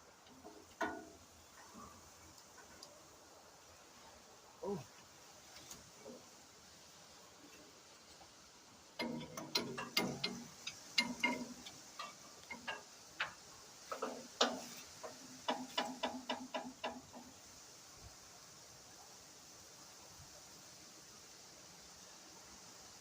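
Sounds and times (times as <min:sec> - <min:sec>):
hand tools clicking on metal: 0:09.0 - 0:17.2.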